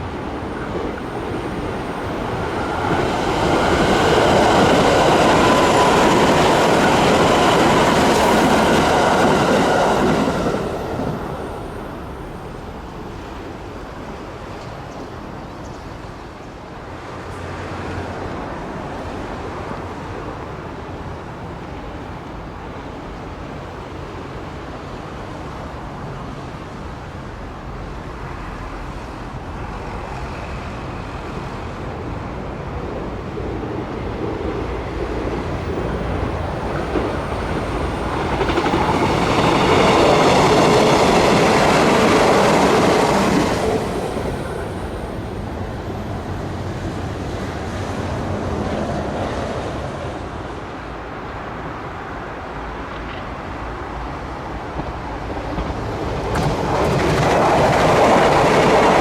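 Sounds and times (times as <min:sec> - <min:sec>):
train passing rumble: 0:00.0 - 0:59.0.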